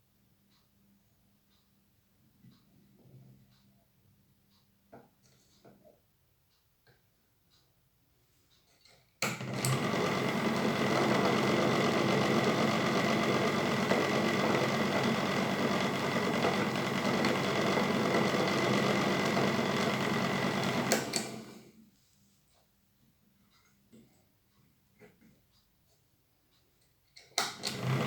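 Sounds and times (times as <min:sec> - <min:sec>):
electric motor whining: 0:09.6 - 0:21.6, 0:27.6 - 0:28.0.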